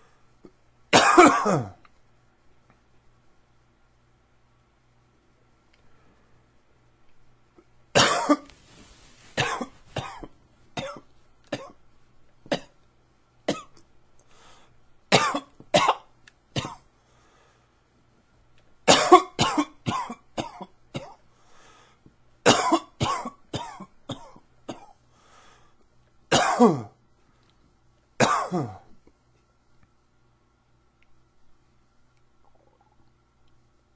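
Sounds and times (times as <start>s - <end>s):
man coughing: 1.0s - 1.8s, 8.0s - 8.5s, 9.4s - 11.0s, 18.9s - 21.2s, 22.5s - 24.9s, 26.3s - 27.0s, 28.2s - 28.9s.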